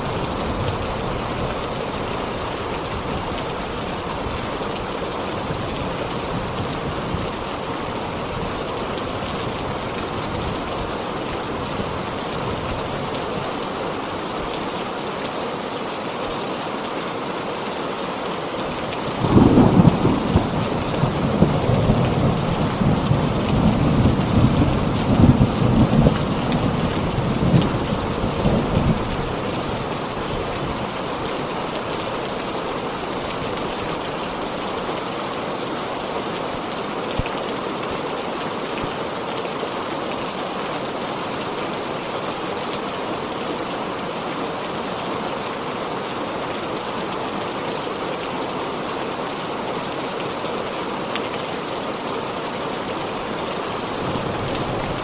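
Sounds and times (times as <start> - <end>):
heavy rain: 0.0 - 55.0
thunder rumbling: 19.1 - 28.0, 53.2 - 55.0.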